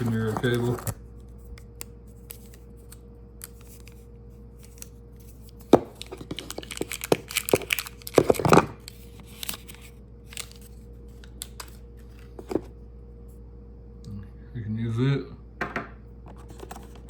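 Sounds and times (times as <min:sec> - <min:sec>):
wrapping rustling and tearing: 0:00.0 - 0:01.0, 0:04.6 - 0:12.6.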